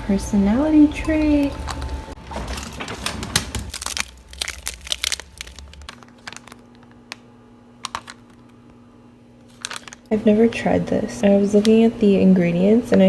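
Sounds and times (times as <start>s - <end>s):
packaging crinkling: 1.6s - 8.8s, 9.4s - 10.1s.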